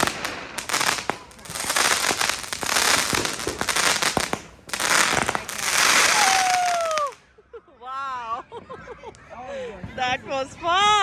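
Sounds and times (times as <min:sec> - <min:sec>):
fireworks crackling and popping: 0:00.0 - 0:07.2.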